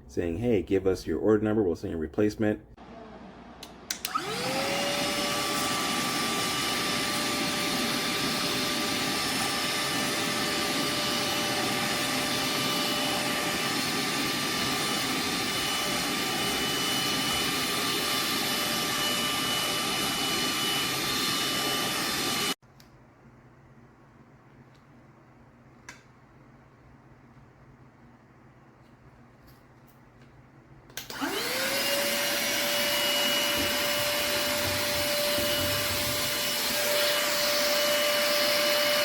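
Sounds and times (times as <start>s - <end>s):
handheld vacuum whining: 3.6s - 22.6s, 31.0s - 39.0s.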